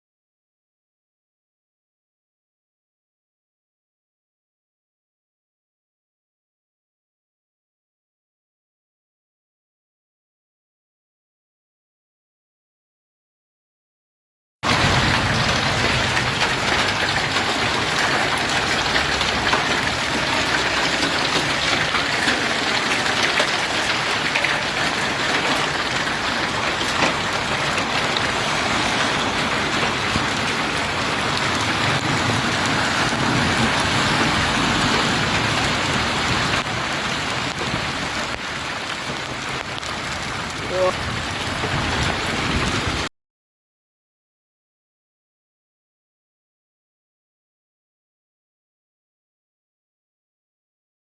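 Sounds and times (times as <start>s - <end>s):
small rain impacts: 14.6s - 43.1s
heavy rain hissing: 14.7s - 43.1s.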